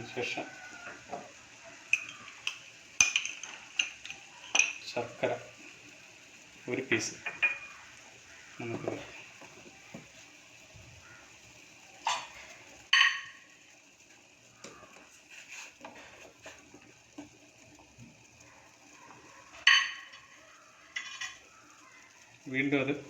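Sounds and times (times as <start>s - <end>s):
metal pot lid clanking: 1.9s - 4.9s, 7.2s - 7.8s, 12.1s - 13.4s, 19.6s - 20.3s, 20.9s - 21.5s.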